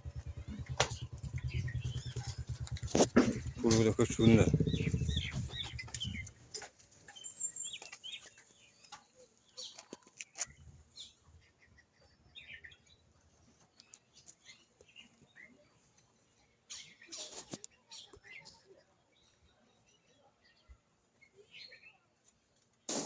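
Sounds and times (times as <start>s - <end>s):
bird calls and chirps: 0.0s - 13.1s
sharp clicks: 0.1s - 6.4s.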